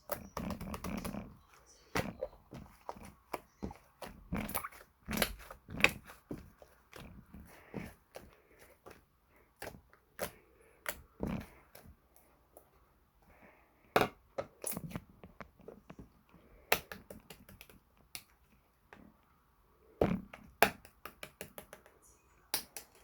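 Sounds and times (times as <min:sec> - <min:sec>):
slime squeezed with sticky pops: 0:00.1 - 0:09.0.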